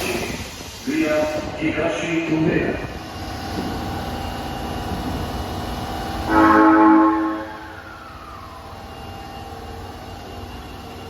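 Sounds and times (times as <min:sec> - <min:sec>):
train running noise: 0:00.0 - 0:11.0
train horn blast: 0:06.2 - 0:07.8.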